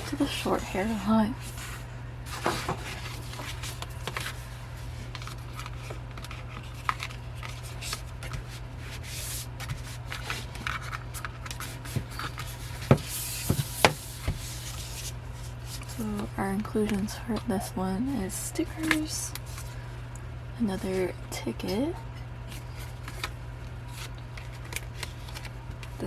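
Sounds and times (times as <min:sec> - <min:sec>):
steady low hum: 0:00.0 - 0:26.0
paper pages rustling: 0:01.5 - 0:16.0, 0:22.5 - 0:26.0.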